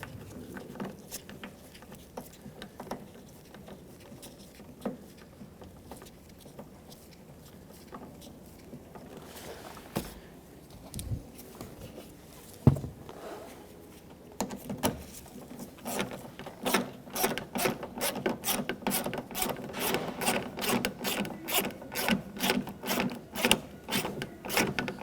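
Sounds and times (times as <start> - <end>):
hand ratchet clicking: 16.6 - 25.0
sharp knock: 19.8 - 20.8.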